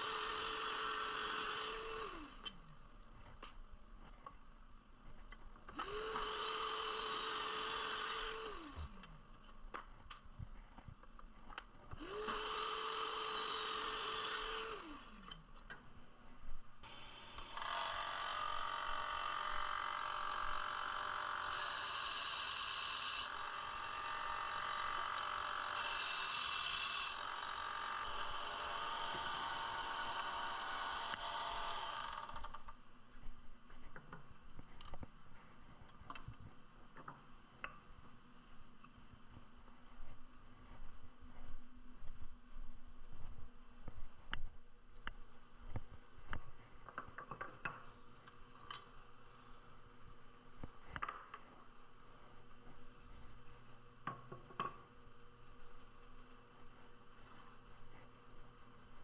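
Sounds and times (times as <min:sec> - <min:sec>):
power tool cutting wood: 0:00.0 - 0:02.6, 0:05.8 - 0:09.2, 0:11.9 - 0:15.4, 0:16.8 - 0:32.7
power tool motor whining: 0:00.0 - 0:02.7, 0:05.7 - 0:09.2, 0:11.9 - 0:15.4, 0:16.8 - 0:32.7.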